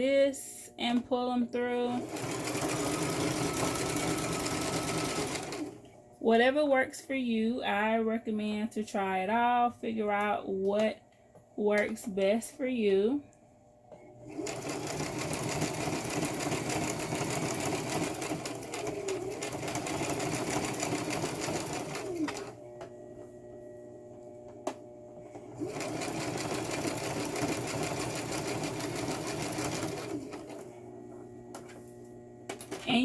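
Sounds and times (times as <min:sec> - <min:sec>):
sewing machine stitching: 0:01.8 - 0:05.8, 0:14.3 - 0:22.6, 0:25.4 - 0:30.7.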